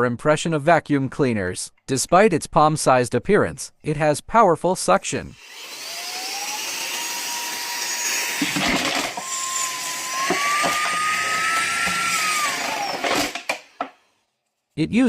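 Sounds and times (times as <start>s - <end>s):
handheld vacuum cleaner running: 5.4s - 14.0s.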